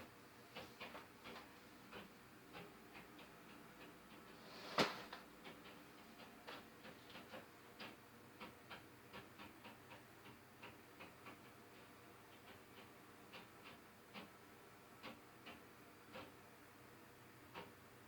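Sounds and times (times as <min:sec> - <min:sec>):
faint tapping through ceiling: 0:00.0 - 0:14.4.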